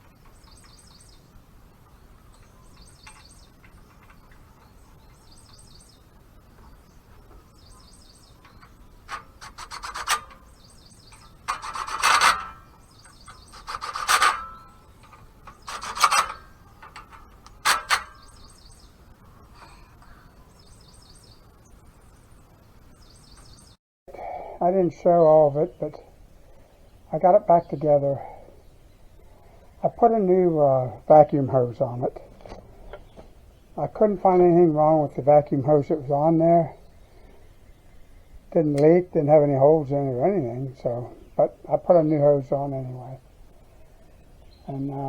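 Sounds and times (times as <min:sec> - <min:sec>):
small bird chirping: 0:00.0 - 0:23.8, 0:40.3 - 0:45.0
loud rasping scrapes: 0:09.1 - 0:10.4, 0:11.4 - 0:18.2.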